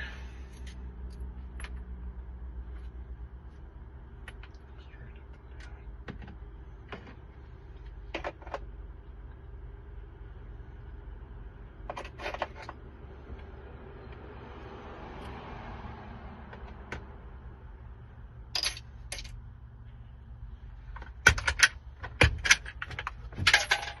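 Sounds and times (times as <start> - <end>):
metal clicks of lock parts and keys: 18.6 - 19.4, 21.0 - 24.0.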